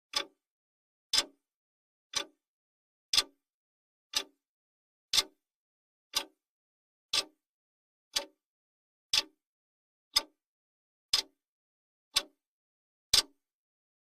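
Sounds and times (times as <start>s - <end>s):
clock ticking: 0.1s - 0.4s, 1.1s - 1.4s, 2.1s - 2.4s, 3.1s - 3.3s, 4.1s - 4.4s, 6.1s - 6.4s, 10.1s - 10.4s, 11.1s - 11.4s.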